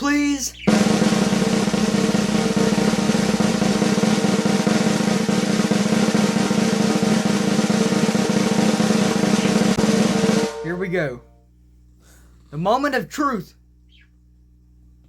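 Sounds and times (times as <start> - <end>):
drum roll: 0.6 - 11.2.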